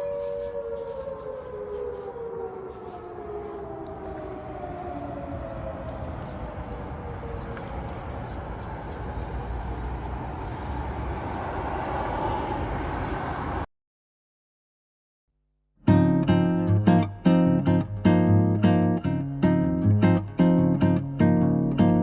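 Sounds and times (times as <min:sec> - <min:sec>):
air-raid siren winding down: 0:00.0 - 0:08.5, 0:16.2 - 0:21.6
city noise: 0:00.0 - 0:13.7, 0:15.9 - 0:22.0.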